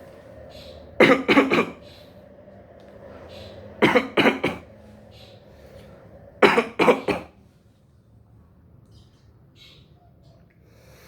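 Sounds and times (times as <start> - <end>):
person coughing: 1.0 - 1.8, 3.8 - 4.6, 6.4 - 7.3.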